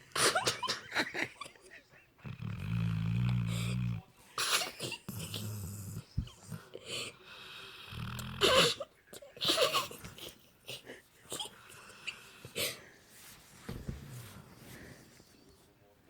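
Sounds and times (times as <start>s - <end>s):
puppy snoring: 2.2s - 4.1s, 5.1s - 6.7s, 7.7s - 8.8s
wheezy hissing breaths: 5.1s - 8.6s, 10.9s - 15.4s.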